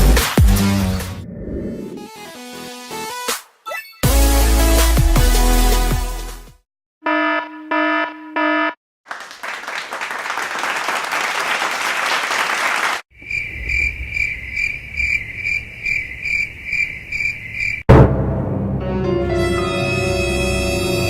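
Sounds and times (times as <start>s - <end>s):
applause: 9.1s - 13.1s
cricket chirping effect: 13.2s - 17.8s.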